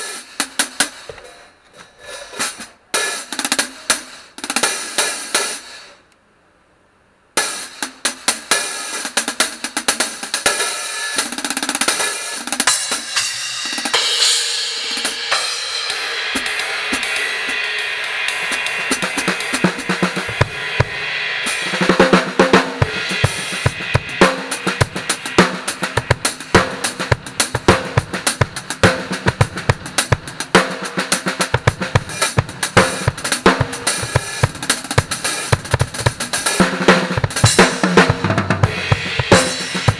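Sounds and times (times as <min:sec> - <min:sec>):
cymbals ringing: 0:12.7 - 0:28.3
bass drum and snare beat: 0:15.1 - 0:39.9.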